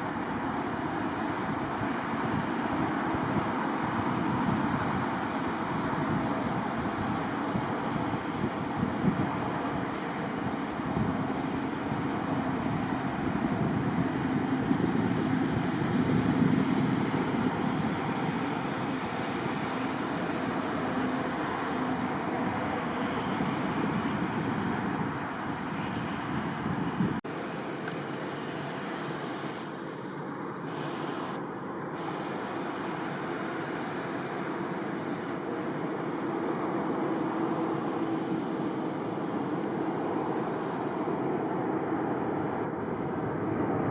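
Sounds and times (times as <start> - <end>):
wind on microphone: 0.0 - 27.2
jet airliner engine roar: 0.0 - 43.9.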